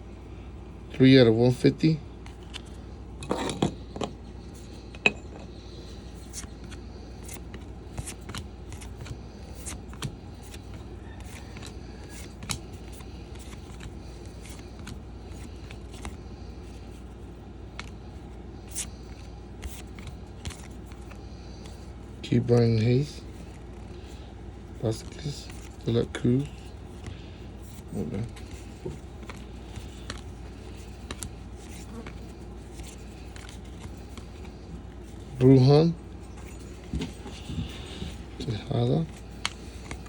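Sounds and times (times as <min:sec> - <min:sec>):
cards flipping: 0:02.2 - 0:40.0.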